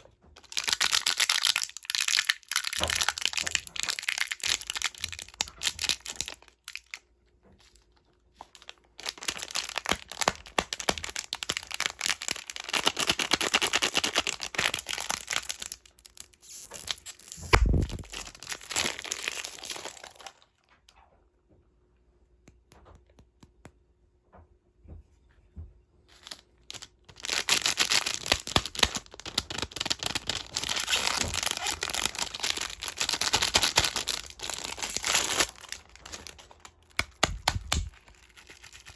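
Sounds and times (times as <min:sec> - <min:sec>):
candy wrappers crinkling: 0:00.4 - 0:20.6, 0:26.1 - 0:38.9
sharp low thump: 0:17.5 - 0:18.1.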